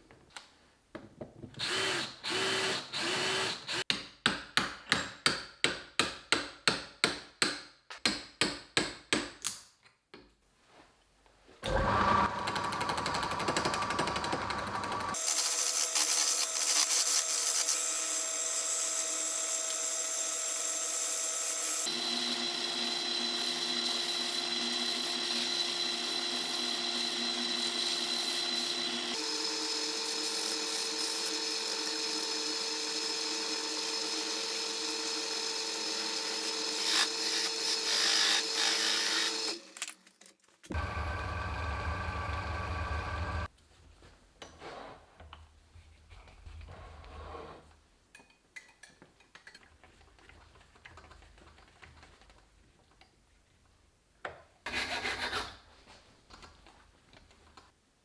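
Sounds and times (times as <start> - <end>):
power tool motor: 1.6 - 3.8, 11.7 - 40.0.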